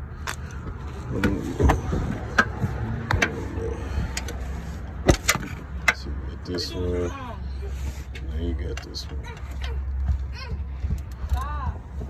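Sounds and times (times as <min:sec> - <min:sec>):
steady low hum: 0:00.0 - 0:12.0
tools clicking and knocking: 0:00.2 - 0:06.1.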